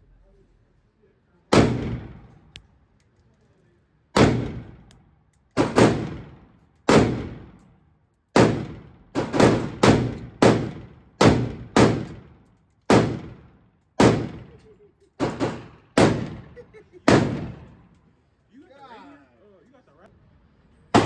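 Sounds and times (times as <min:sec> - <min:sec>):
echoing gunshots: 0:01.5 - 0:02.3, 0:04.2 - 0:04.8, 0:05.6 - 0:07.6, 0:08.4 - 0:14.5, 0:15.2 - 0:17.7.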